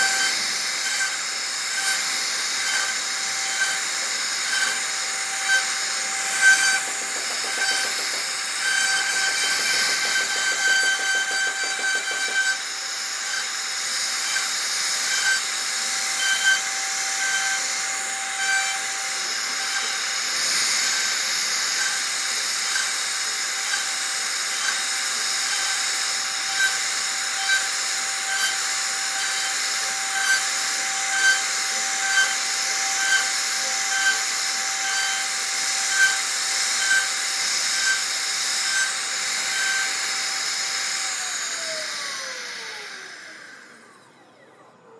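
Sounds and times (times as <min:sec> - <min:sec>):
bit cutting wood hiss: 0:00.0 - 0:15.4
router spindle whine: 0:00.0 - 0:44.9.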